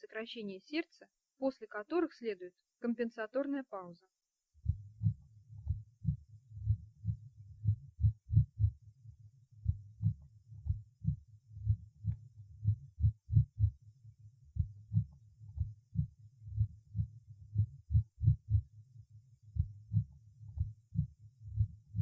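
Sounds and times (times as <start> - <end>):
heartbeat lub-dub: 4.6 - 8.8, 9.6 - 13.8, 14.5 - 18.7, 19.5 - 22.0.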